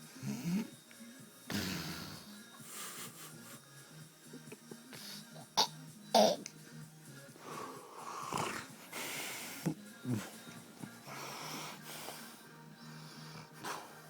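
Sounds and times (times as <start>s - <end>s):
man snoring: 0.0s - 0.8s, 1.5s - 2.5s, 7.4s - 14.0s.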